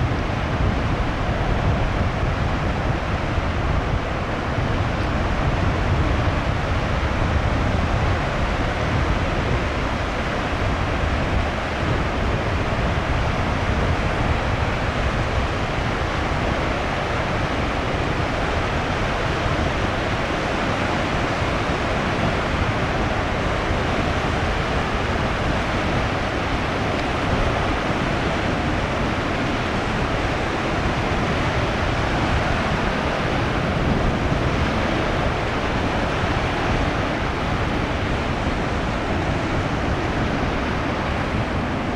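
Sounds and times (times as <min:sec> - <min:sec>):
deep surf rumble: 0:00.0 - 0:41.9
waves breaking: 0:14.5 - 0:41.9.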